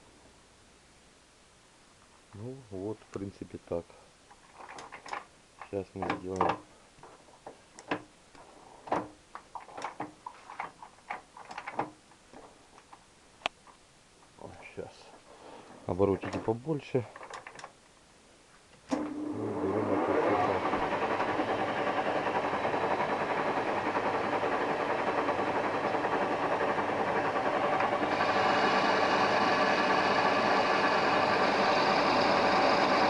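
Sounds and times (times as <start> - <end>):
metal lathe whirring: 19.6 - 33.0.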